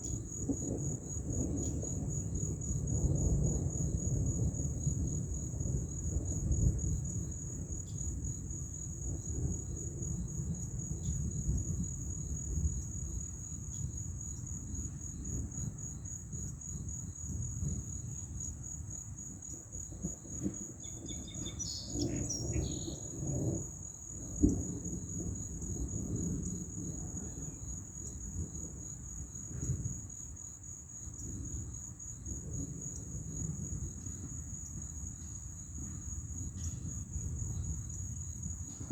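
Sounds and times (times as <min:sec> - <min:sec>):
insects trilling: 0:18.9 - 0:38.8.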